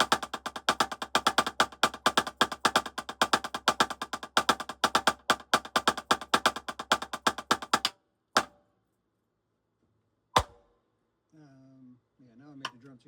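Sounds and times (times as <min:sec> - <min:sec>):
drum struck with sticks: 0:00.0 - 0:08.5.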